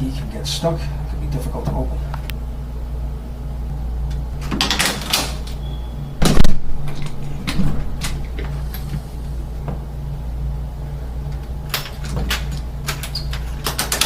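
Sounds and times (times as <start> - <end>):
high squeak: 5.6 - 6.2
metal lock clicks and rattles: 11.7 - 14.0.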